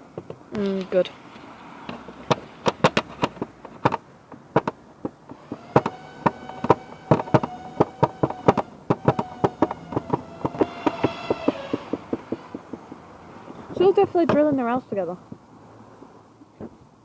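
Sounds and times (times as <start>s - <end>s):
sharp knocks of drilling: 1.8s - 14.7s
drill motor whining: 5.2s - 12.7s.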